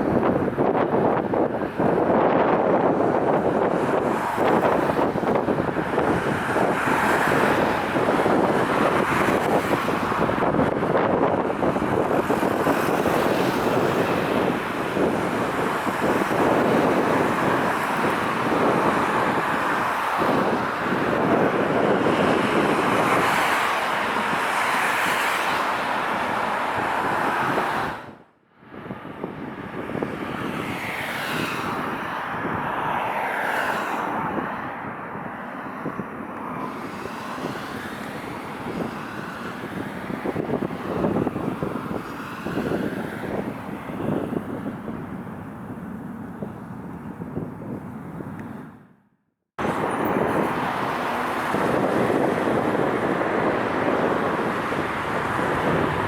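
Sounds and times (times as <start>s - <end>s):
wind buffeting microphone: 0.0s - 49.0s, 49.6s - 56.0s
jet engines: 49.6s - 56.0s.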